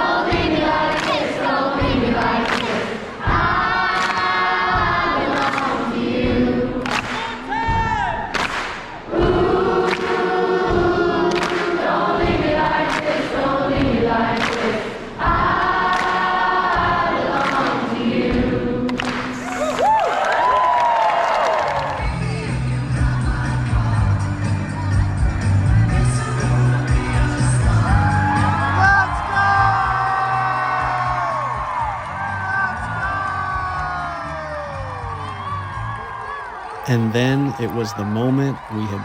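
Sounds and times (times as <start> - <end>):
crowd singing with live band: 0.0 - 7.2, 9.1 - 19.4
crowd noise: 36.1 - 39.0.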